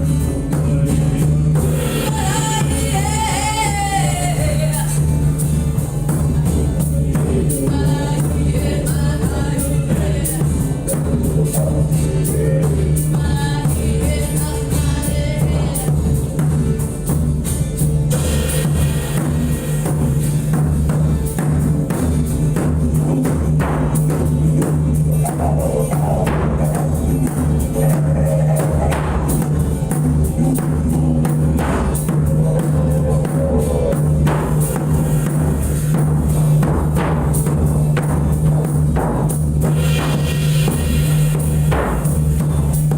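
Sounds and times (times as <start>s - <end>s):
drum and tambourine beat: 0.0s - 42.9s
person singing: 0.4s - 5.2s, 6.9s - 16.2s, 25.1s - 29.5s.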